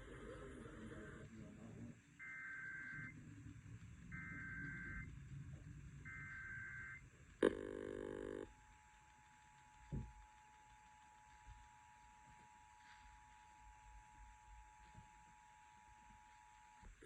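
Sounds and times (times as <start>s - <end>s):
loud harsh buzzing tone: 6.4s - 8.5s.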